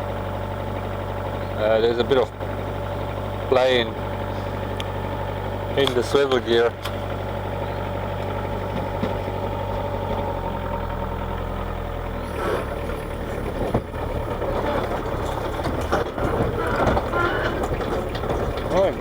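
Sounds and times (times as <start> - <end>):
diesel engine running: 0.0 - 19.0
hydraulic machine knocks: 12.4 - 19.0.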